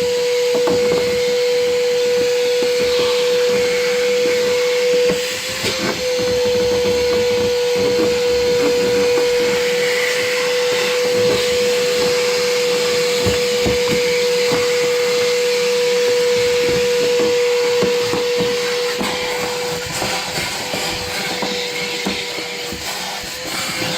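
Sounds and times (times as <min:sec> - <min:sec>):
shop vacuum running: 0:00.0 - 0:23.9.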